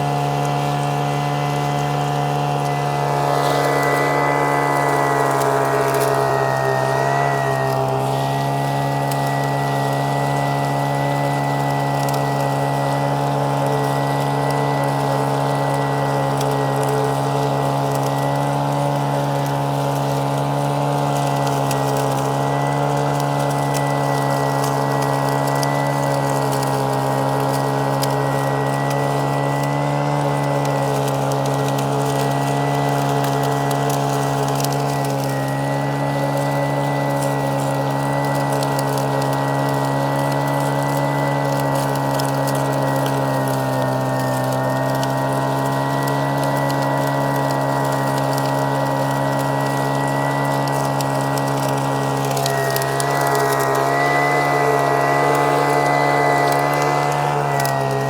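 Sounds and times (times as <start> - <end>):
gravel rattling through hose: 0.0 - 58.0
small engine whining: 0.0 - 58.0.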